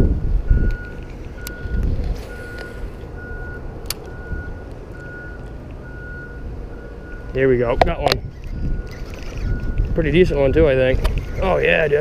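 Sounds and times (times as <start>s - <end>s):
backup alarm beeping: 0.0s - 10.0s
sharp click: 11.0s - 11.4s.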